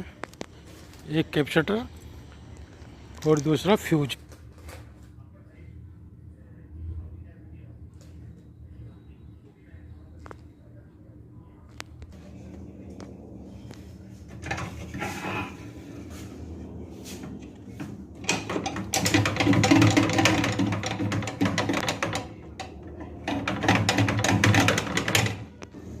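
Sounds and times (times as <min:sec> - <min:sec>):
clattering rustling noise: 0:12.1 - 0:26.0.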